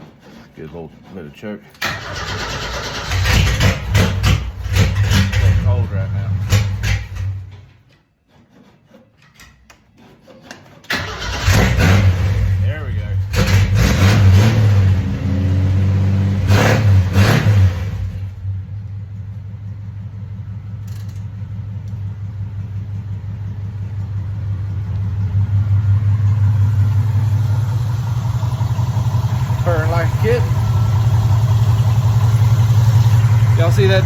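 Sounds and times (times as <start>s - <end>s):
car engine idling: 1.8s - 7.6s, 17.9s - 34.0s.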